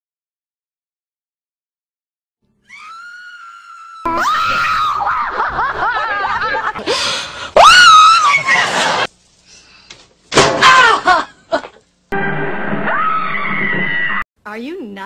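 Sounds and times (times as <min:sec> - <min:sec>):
woman squealing and yelping: 0:02.7 - 0:05.4, 0:07.6 - 0:08.9
woman screaming: 0:02.7 - 0:05.5, 0:07.6 - 0:08.8, 0:10.6 - 0:11.3.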